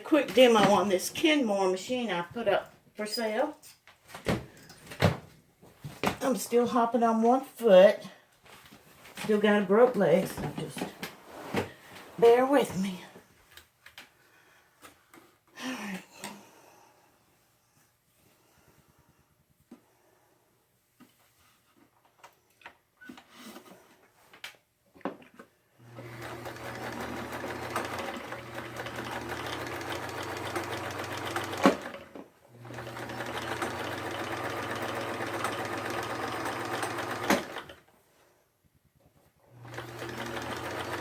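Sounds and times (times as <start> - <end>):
sewing machine motor and needle: 25.9 - 37.8, 39.6 - 41.0
sewing machine stop click: 33.0 - 37.7.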